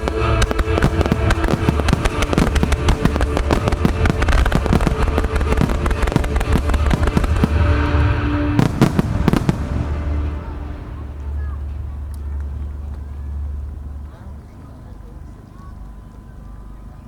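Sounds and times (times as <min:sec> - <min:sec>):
heavy firework booms: 0:00.0 - 0:11.6
fireworks bursting and crackling: 0:00.0 - 0:12.6.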